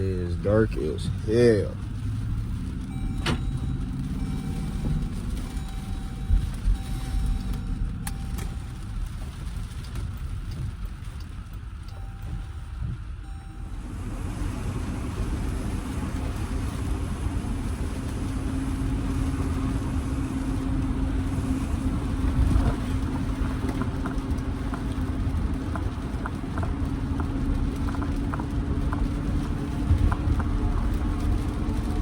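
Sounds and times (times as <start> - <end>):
car engine droning: 0.0 - 32.0
tyre and road rumble: 0.0 - 32.0
light irregular ticks: 21.5 - 32.0.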